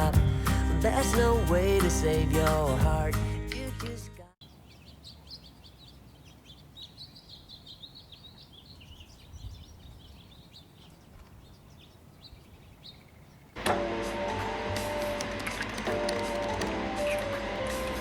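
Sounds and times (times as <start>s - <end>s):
small birds chirping: 4.4s - 13.6s.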